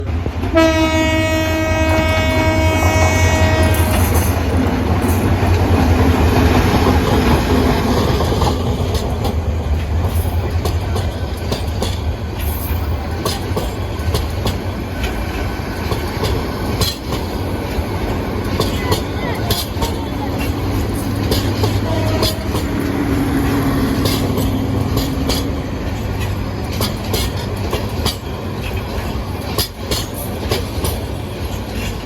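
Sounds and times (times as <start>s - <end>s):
train rumbling past: 0.0s - 32.0s
train horn: 0.5s - 4.4s, 21.6s - 24.2s
wheels clicking over rail joints: 1.8s - 32.0s.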